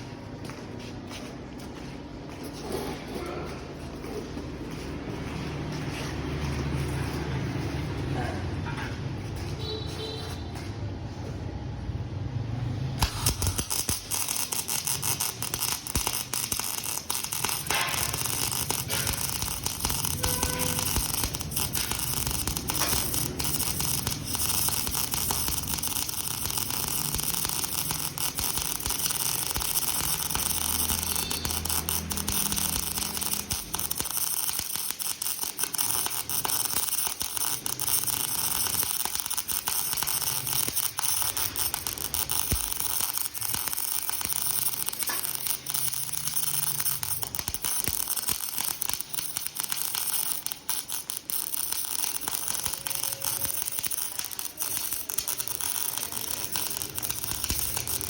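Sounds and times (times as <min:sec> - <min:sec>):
electric welding arc crackling: 0:12.3 - 0:58.0.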